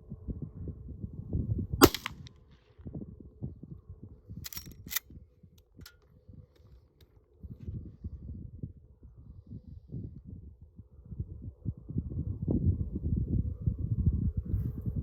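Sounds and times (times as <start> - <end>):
rifle shot: 1.8 - 2.3
rifle lever metallic clacks: 4.4 - 5.0.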